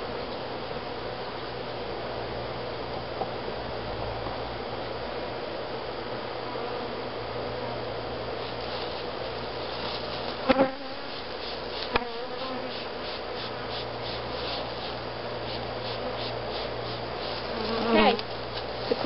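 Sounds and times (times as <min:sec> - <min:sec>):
bees buzzing: 0:08.4 - 0:19.0.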